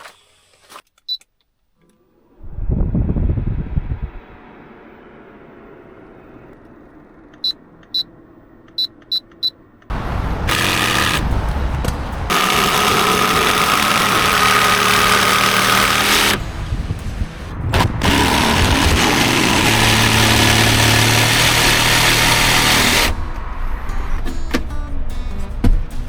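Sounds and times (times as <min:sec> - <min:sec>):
steady whine: 0:02.0 - 0:24.3
short electronic beeps: 0:07.4 - 0:08.1, 0:08.7 - 0:09.6
air conditioner rushing: 0:09.9 - 0:23.2.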